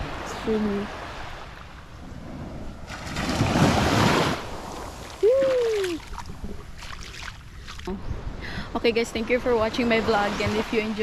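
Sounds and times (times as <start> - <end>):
wave washing on beach: 0.0 - 7.9.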